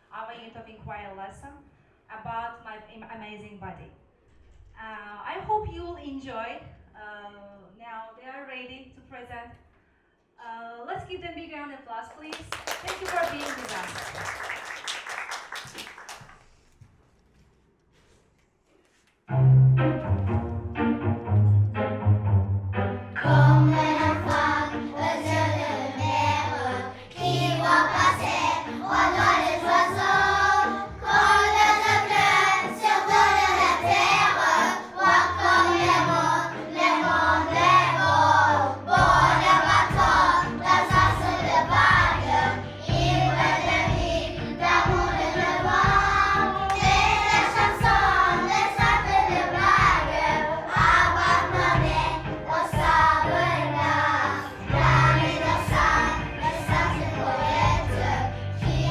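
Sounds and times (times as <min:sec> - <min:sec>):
backing music with bass line: 0:19.3 - 0:58.9
children singing: 0:23.2 - 0:58.9
steady beat: 0:27.2 - 0:34.4, 0:39.0 - 0:42.3, 0:42.9 - 0:53.3, 0:54.6 - 0:58.0.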